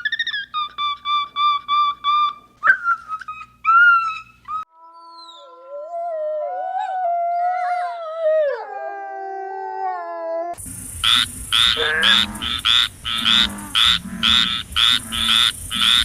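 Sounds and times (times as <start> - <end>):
dogs yelping: 0.0 - 4.7, 11.0 - 16.0
dogs howling: 11.7 - 14.4.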